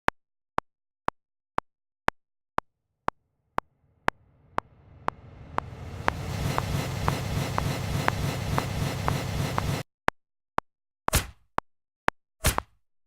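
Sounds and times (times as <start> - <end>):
rumbling hiss: 4.3 - 9.8.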